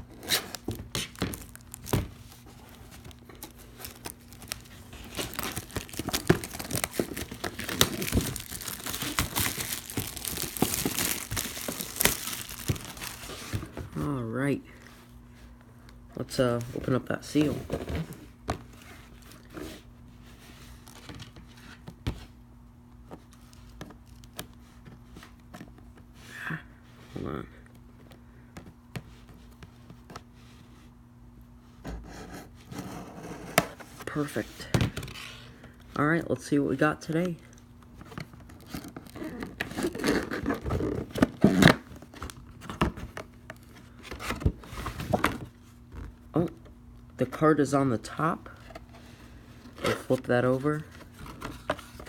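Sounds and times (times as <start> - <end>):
packaging crinkling and rustling: 0.0 - 14.0, 37.5 - 46.2, 48.5 - 52.0.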